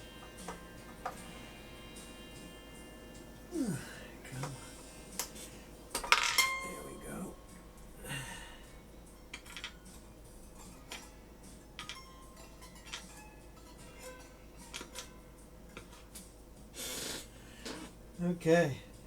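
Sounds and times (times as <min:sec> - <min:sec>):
small metal parts clinking: 0:09.3 - 0:10.0, 0:10.6 - 0:11.1, 0:11.8 - 0:15.1.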